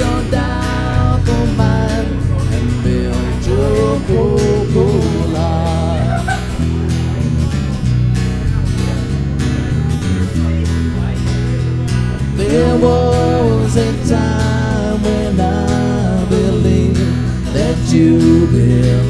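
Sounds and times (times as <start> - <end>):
person singing: 0.0 - 6.5, 12.4 - 19.0
live country band: 0.0 - 19.0
strummed guitar: 0.0 - 19.0.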